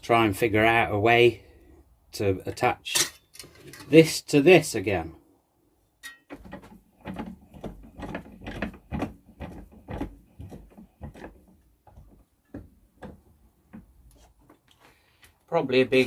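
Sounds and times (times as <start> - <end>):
hard objects clattering: 6.0 - 14.6.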